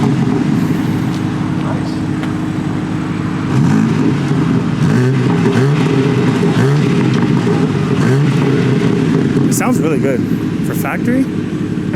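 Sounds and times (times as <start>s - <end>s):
car engine revving: 0.0s - 11.9s.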